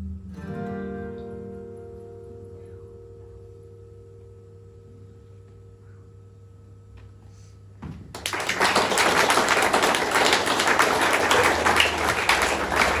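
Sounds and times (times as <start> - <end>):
audience applauding: 8.1 - 13.0.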